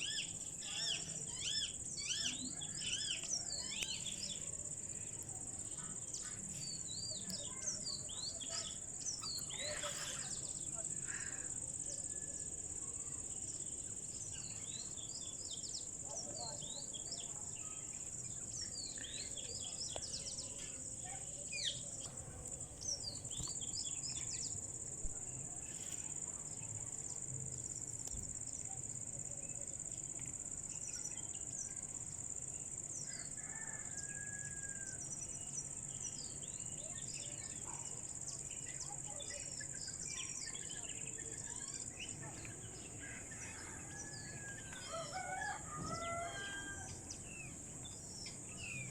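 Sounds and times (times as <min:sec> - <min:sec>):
birds chirping: 0:14.2 - 0:24.6.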